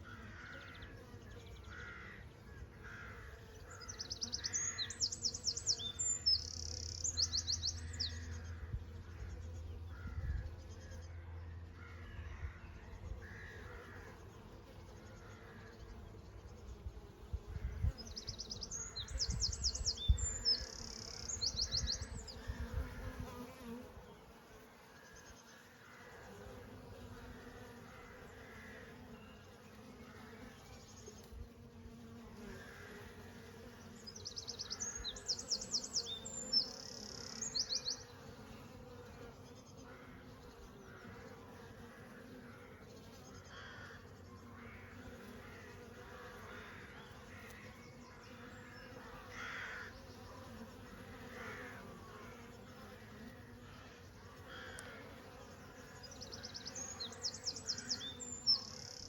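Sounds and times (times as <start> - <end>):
bees buzzing: 13.3 - 59.0.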